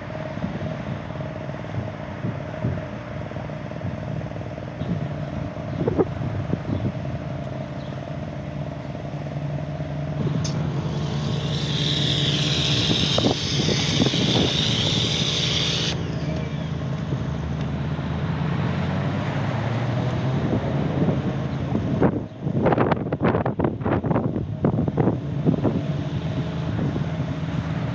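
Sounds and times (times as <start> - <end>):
generator engine running: 0.0 - 18.0
power washer spraying hiss: 10.7 - 16.1.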